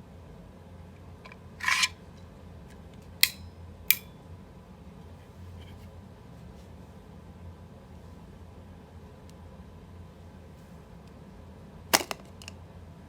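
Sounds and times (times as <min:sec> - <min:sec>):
handling scrape: 0:01.3 - 0:02.0, 0:05.2 - 0:06.0.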